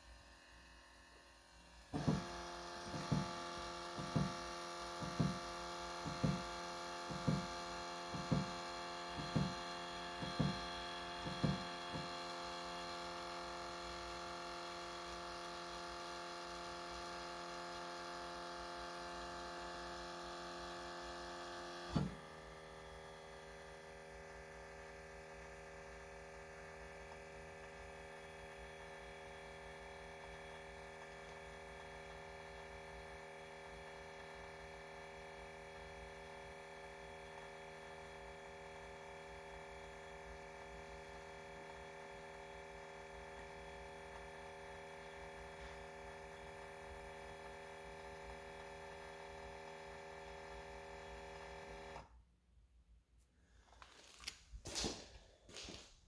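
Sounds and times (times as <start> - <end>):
electric pump whining: 0.0 - 52.1
pump ticking: 2.0 - 17.9.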